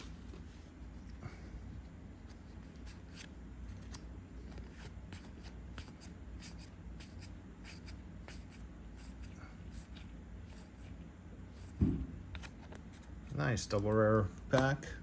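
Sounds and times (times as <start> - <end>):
low background hum: 0.0 - 15.0
cards flicking and sliding: 11.6 - 14.8.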